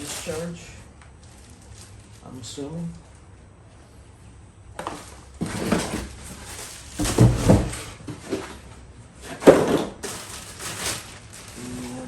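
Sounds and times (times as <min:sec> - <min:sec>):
packaging rustling and knocking: 0:04.8 - 0:08.7, 0:09.3 - 0:11.6.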